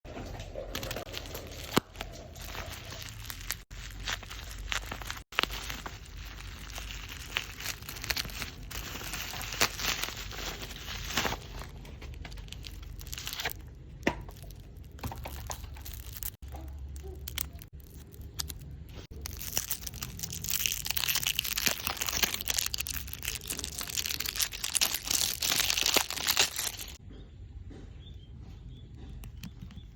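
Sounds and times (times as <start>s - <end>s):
packaging tearing and crumpling: 0.7s - 27.0s.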